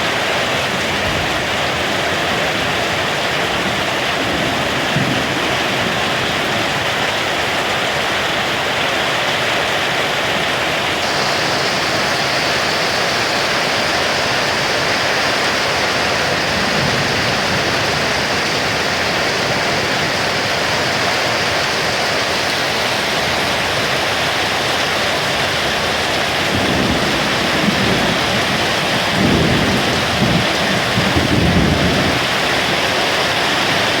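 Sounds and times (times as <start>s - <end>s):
heavy rain pouring: 0.0s - 34.0s
low thunder rumbling: 0.7s - 7.6s, 11.0s - 34.0s.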